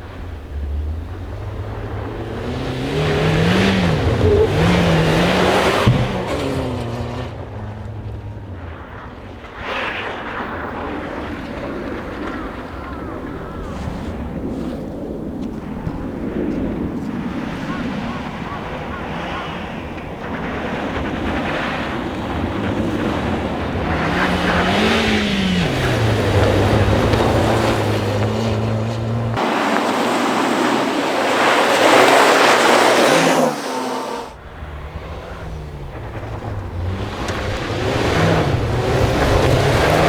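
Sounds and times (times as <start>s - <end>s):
tyre noise rushing: 0.0s - 9.0s, 22.6s - 40.0s
rally car engine revving: 0.0s - 14.8s, 17.7s - 40.0s.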